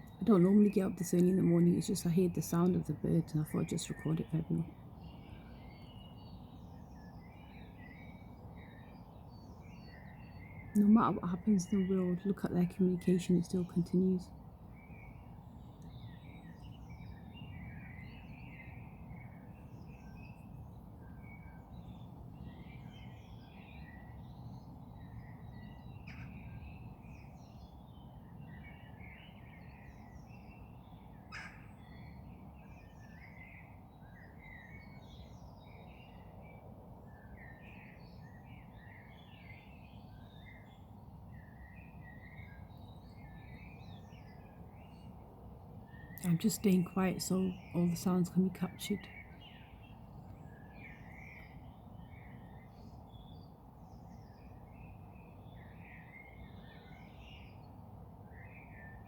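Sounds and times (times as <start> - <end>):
birds chirping and singing: 0.0 - 36.2, 45.9 - 54.6.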